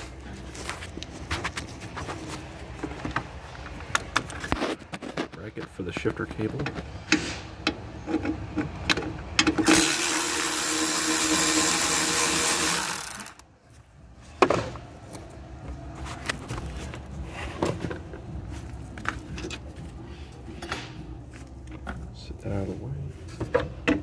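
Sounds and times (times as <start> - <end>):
power tool spinning: 9.6 - 13.4.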